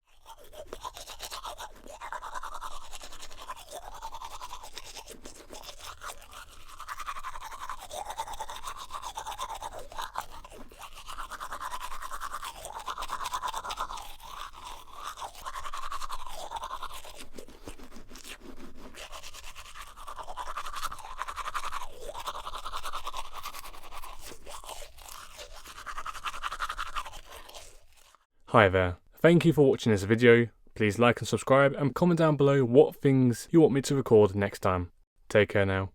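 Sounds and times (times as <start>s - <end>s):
toothbrush scrubbing teeth: 0.0s - 28.3s.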